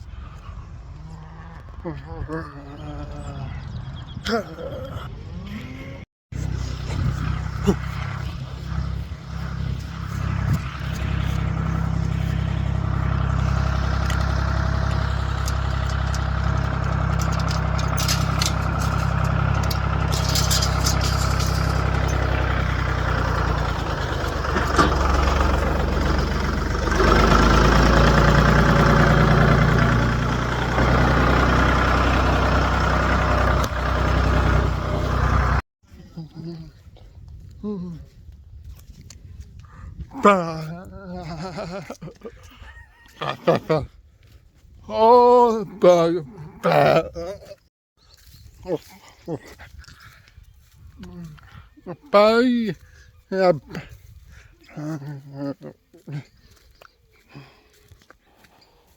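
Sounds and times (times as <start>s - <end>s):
vehicle engine running: 6.3s - 35.6s, 54.8s - 58.6s.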